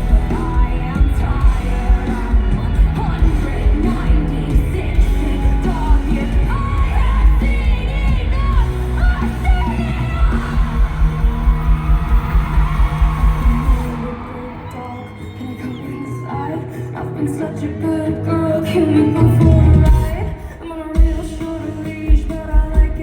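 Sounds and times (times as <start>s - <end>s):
live band music: 0.0s - 15.4s, 17.9s - 23.0s
crowd yelling and whooping: 0.0s - 17.7s.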